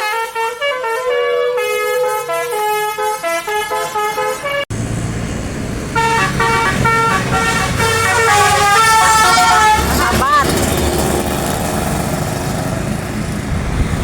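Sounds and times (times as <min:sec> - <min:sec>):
bus horn playing melody: 0:00.0 - 0:04.7, 0:05.9 - 0:10.7
road noise: 0:00.0 - 0:14.0
engine rumble: 0:02.0 - 0:14.0.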